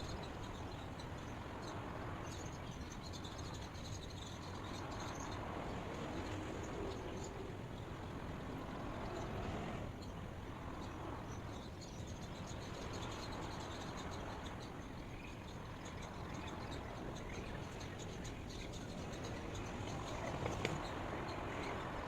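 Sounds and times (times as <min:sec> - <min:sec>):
steady background noise: 0:00.0 - 0:22.0.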